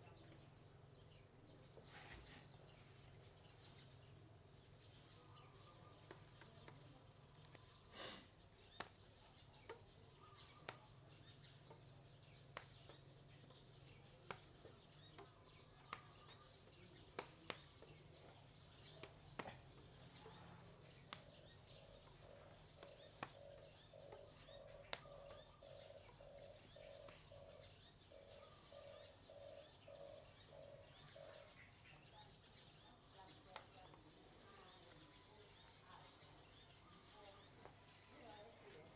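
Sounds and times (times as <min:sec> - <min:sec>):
faint sharp clicks: 0:08.6 - 0:09.0, 0:09.6 - 0:25.4.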